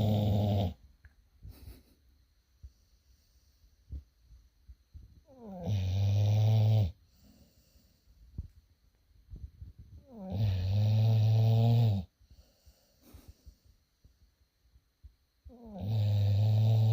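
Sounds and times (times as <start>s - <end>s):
dog snoring: 0.0s - 0.8s, 5.2s - 7.4s, 10.0s - 12.1s, 15.5s - 16.9s.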